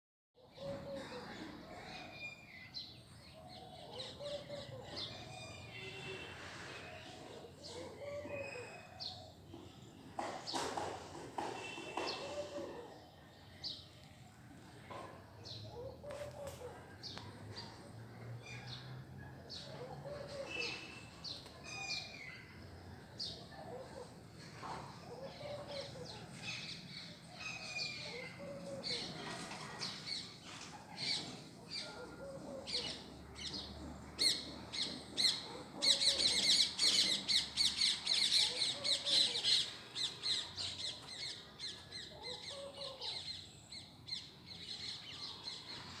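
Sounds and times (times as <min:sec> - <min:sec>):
birds chirping and squawking: 0:03.4 - 0:09.4, 0:23.2 - 0:46.0.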